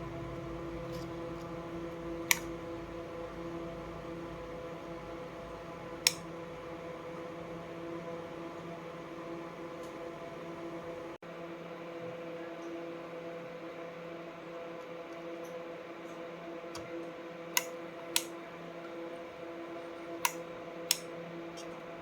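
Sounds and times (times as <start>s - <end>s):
steady hum of held tones: 0.0s - 11.2s.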